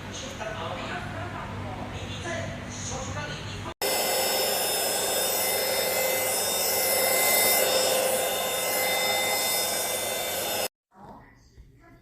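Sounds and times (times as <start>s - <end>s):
stick vacuum cleaner running: 3.8s - 10.7s.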